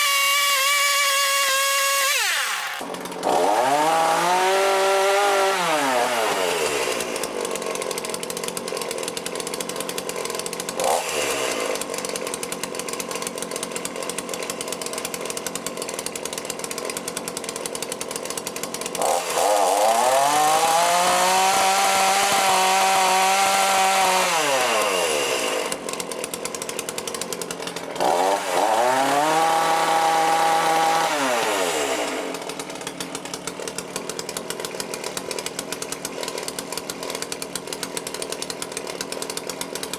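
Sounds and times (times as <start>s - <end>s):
chainsaw engine idling and revving: 0.0s - 39.9s.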